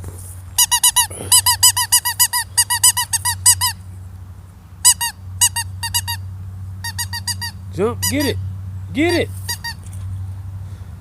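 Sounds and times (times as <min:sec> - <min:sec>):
squeaky dog toy squeaking: 0:00.6 - 0:03.8, 0:04.8 - 0:06.2, 0:06.8 - 0:08.4, 0:09.0 - 0:09.8.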